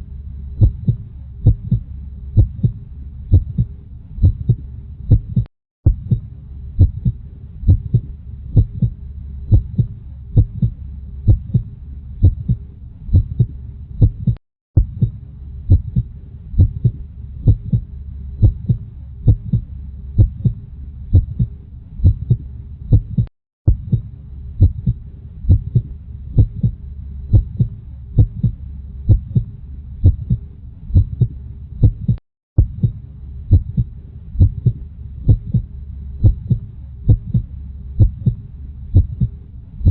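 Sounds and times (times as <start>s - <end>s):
faint hum: 0.0s - 39.9s
heartbeat thumps: 0.6s - 39.9s.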